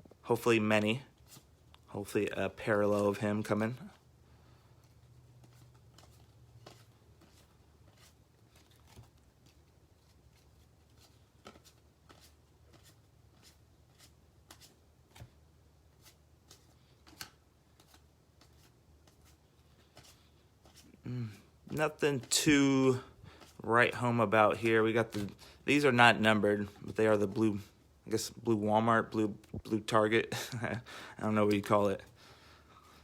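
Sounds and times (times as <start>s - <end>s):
trading cards flipping: 4.8s - 21.0s, 21.7s - 25.9s.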